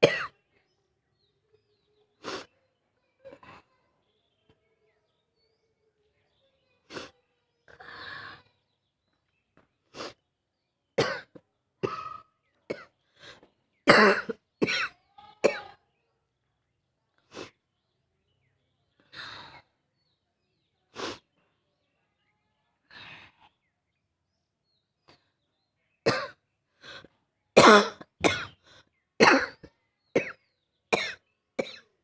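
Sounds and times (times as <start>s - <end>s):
person coughing: 13.9s - 14.9s, 27.6s - 28.6s.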